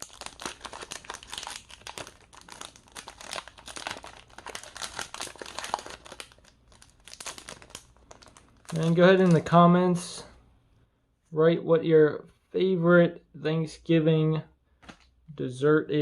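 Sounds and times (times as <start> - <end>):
foil wrapper crinkling and tearing: 0.0 - 9.6.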